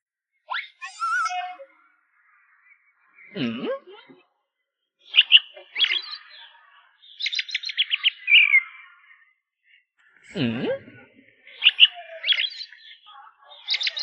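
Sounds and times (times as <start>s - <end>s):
high bird chirps: 0.5s - 3.5s, 5.0s - 9.2s, 11.6s - 14.0s.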